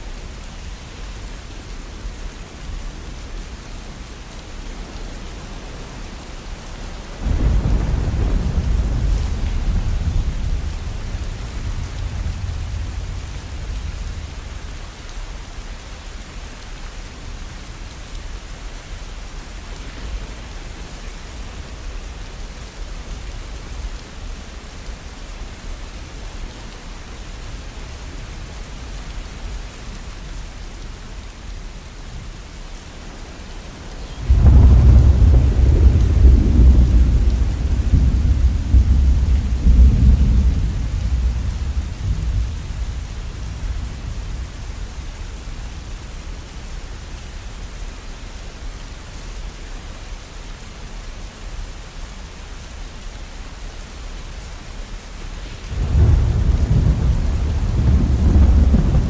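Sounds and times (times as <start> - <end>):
steady rain: 0.0 - 59.0
thunder rumbling: 7.2 - 14.6, 34.0 - 44.8, 55.7 - 59.0.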